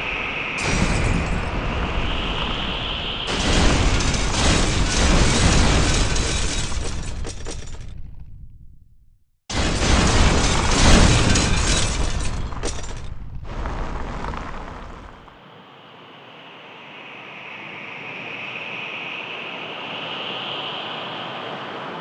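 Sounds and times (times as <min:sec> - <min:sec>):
wind blasting microphone: 0:00.0 - 0:07.2
steady rush of wind: 0:00.0 - 0:07.8, 0:12.6 - 0:22.0.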